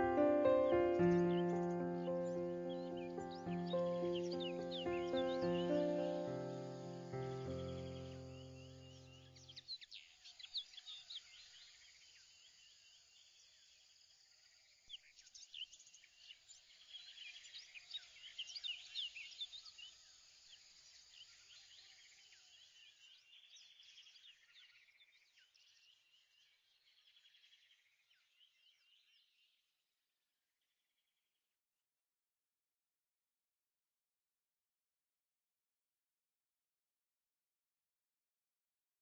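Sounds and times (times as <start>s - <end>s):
small birds chirping: 0.0s - 29.6s.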